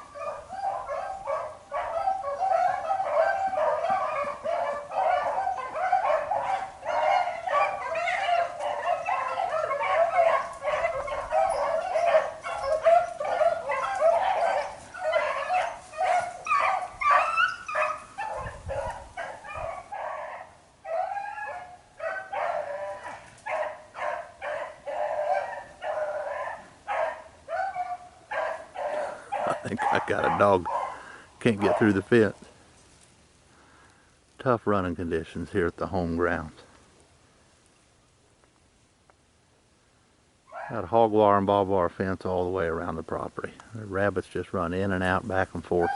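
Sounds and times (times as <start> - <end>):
dogs baying: 0.0 - 32.4, 40.5 - 41.0, 45.4 - 45.9.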